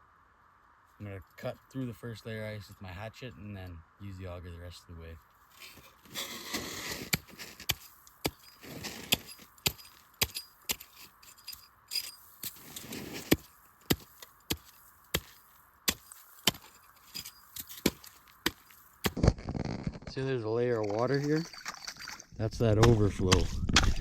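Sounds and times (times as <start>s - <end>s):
hatchet chopping ice: 6.4s - 19.2s.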